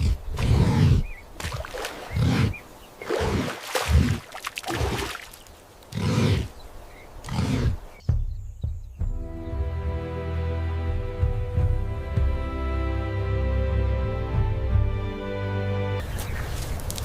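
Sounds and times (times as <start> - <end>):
animal deep grunting calls: 0.0 - 1.2, 1.8 - 5.2, 5.9 - 6.6, 7.2 - 8.0.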